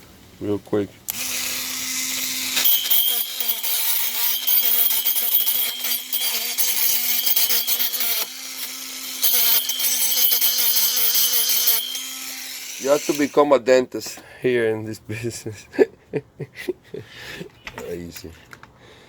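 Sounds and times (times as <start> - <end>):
electric rotary tool humming: 1.1 - 13.5.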